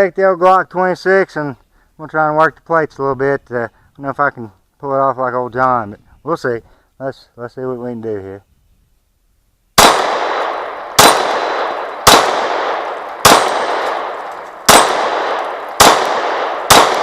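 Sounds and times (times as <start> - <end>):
pistol shots echoing: 9.8 - 17.0.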